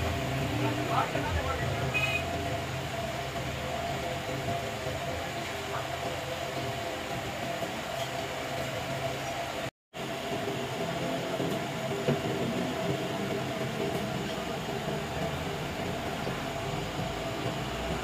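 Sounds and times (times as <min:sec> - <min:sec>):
machine humming and whining: 0:00.0 - 0:18.0.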